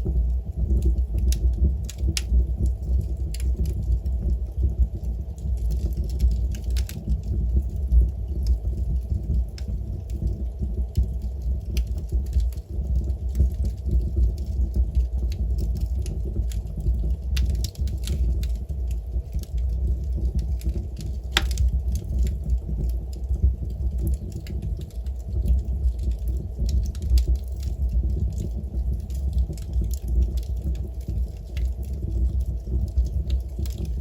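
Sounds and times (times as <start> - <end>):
wood fire crackling: 0.0 - 34.0.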